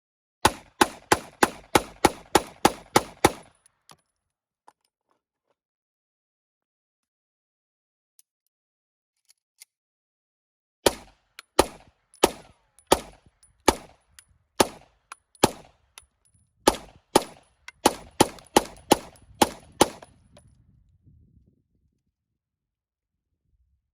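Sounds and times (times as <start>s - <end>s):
semi-automatic gunshots: 0.4s - 3.5s, 10.8s - 14.0s, 14.6s - 15.8s, 16.7s - 20.2s.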